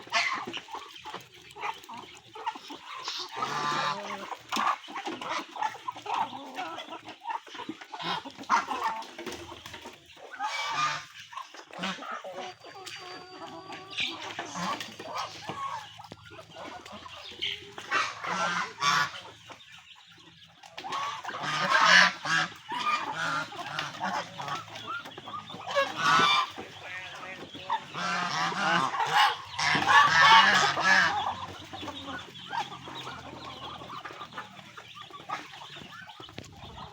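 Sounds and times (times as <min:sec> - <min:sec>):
geese honking: 0:00.0 - 0:36.9.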